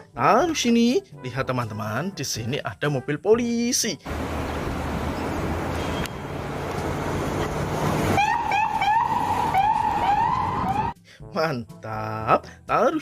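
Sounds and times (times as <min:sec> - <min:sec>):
siren yelp: 0:08.1 - 0:11.0.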